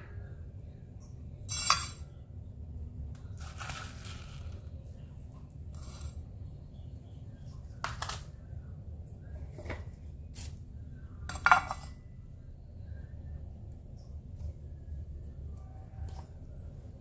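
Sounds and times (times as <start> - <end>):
steady low hum: 0.0 - 17.0
kitchen utensils clattering: 1.5 - 2.1, 11.3 - 12.0.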